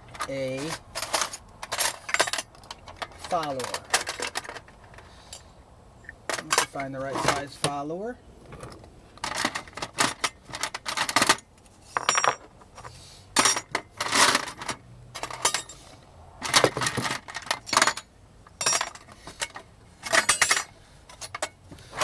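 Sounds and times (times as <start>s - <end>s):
small metal pieces clinking: 20.1s - 21.5s.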